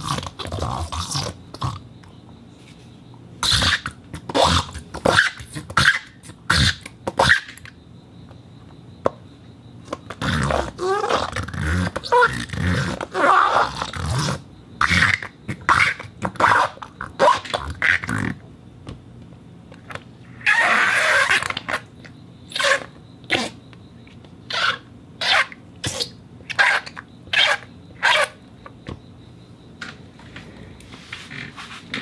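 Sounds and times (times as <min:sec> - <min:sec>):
wet silicone squeaky rubs: 0:03.4 - 0:07.6, 0:10.1 - 0:18.4, 0:20.2 - 0:21.9, 0:22.5 - 0:28.4, 0:30.9 - 0:32.0.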